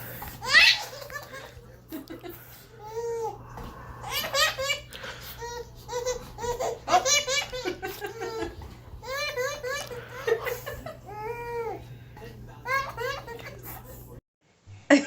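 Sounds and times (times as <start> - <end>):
baby giggling: 0.4 - 1.6, 4.0 - 11.8, 12.7 - 13.8.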